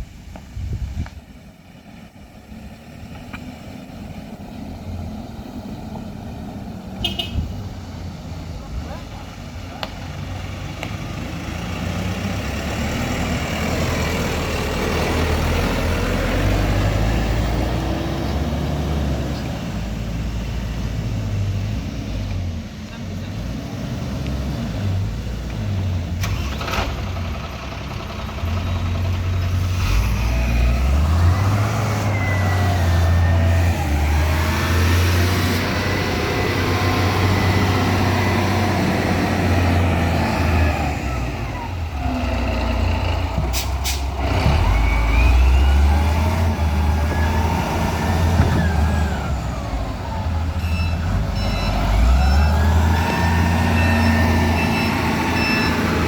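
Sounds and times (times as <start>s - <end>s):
diesel engines revving: 0.0s - 56.0s
short beeps: 50.6s - 52.6s, 53.7s - 56.0s.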